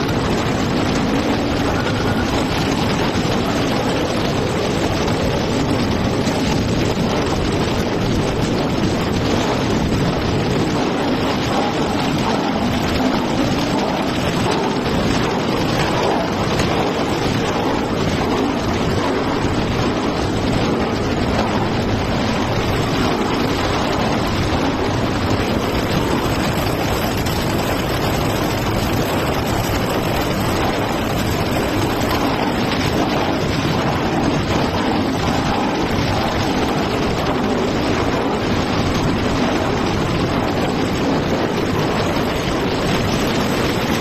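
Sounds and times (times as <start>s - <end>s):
water churning: 0.0s - 36.8s
machine running steadily: 0.0s - 44.0s.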